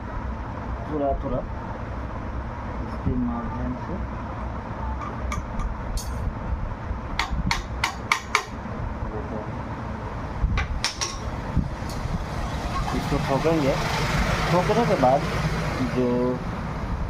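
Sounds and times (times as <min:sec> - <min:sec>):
metal-on-metal taps: 0:10.6 - 0:11.3.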